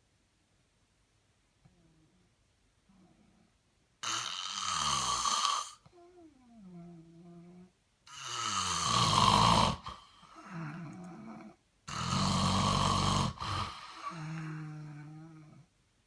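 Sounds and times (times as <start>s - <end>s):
quiet tonal breaths: 1.6s - 3.7s, 5.7s - 8.7s, 9.7s - 15.8s
man snoring: 4.0s - 5.8s, 8.1s - 15.6s.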